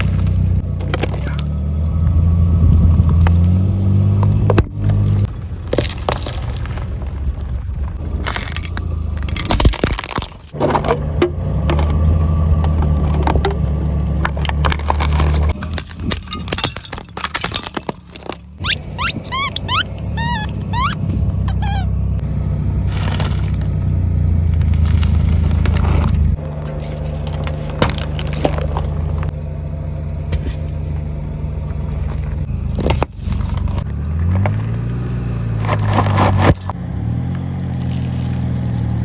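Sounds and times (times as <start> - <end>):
objects cracking under tyres: 0.0 - 1.6, 2.9 - 22.0, 22.8 - 29.4, 30.2 - 39.0
car engine running: 0.0 - 39.0
high rising squeaks: 18.6 - 22.2.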